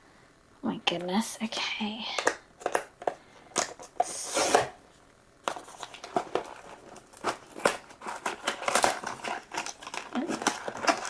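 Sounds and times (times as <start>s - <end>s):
packaging tearing: 3.6s - 4.8s, 5.4s - 11.0s
packaging clicks: 5.4s - 11.0s
packaging crinkling and rustling: 5.4s - 11.0s.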